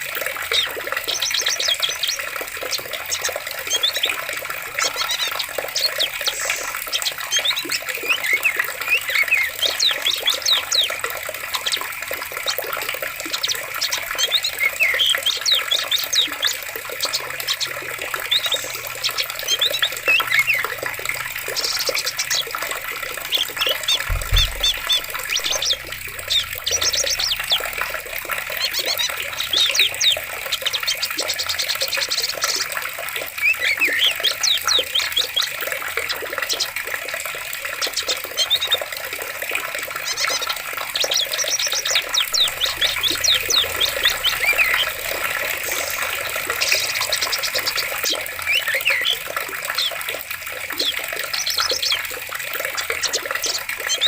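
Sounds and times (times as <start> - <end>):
small birds chirping: 0.0 - 36.9, 37.6 - 54.0
running water: 0.0 - 54.0
low thump: 24.0 - 26.7.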